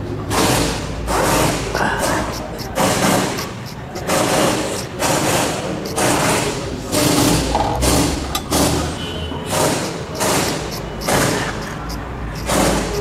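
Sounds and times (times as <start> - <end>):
wire brush scrubbing metal: 0.6 - 6.5, 9.5 - 13.0.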